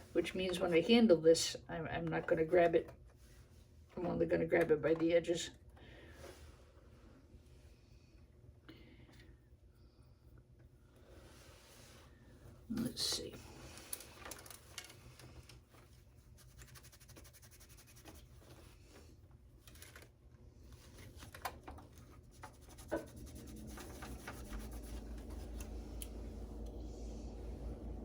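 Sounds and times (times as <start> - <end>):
low steady hum: 0.0 - 28.0
scratching and small clicks: 19.6 - 20.2.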